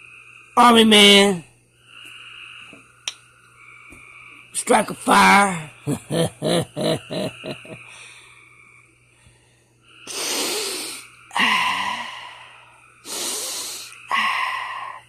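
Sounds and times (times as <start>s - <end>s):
man laughing: 5.8s - 7.9s
man wheezing exhalations: 10.1s - 15.0s.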